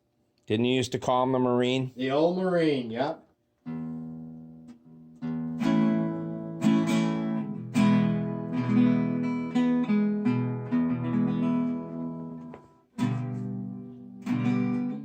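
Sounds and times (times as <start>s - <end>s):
acoustic guitar playing a tune: 3.6s - 15.0s.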